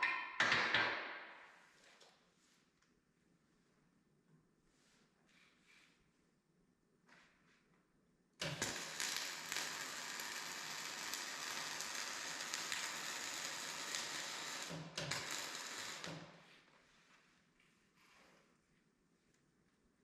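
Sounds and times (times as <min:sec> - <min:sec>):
welding arc crackling: 0:08.4 - 0:16.5.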